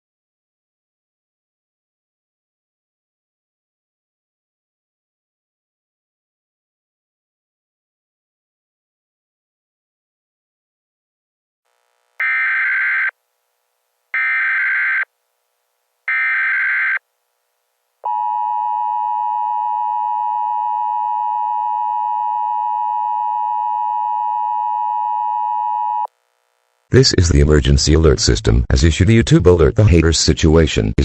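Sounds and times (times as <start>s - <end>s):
screeching digital header bursts: 12.2s - 13.1s, 14.2s - 15.0s, 16.1s - 17.0s
two-tone attention signal: 18.1s - 26.1s.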